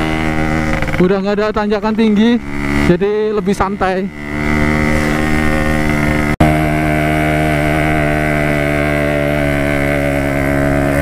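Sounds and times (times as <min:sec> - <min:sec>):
two-stroke motorcycle engine running: 0:00.0 - 0:11.0.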